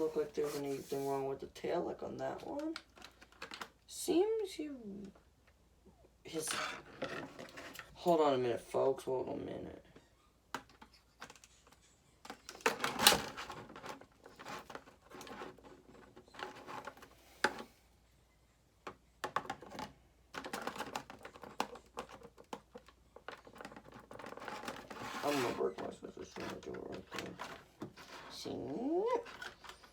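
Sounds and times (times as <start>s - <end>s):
packaging clicks and rustles: 19.2s - 28.4s, 29.1s - 29.9s.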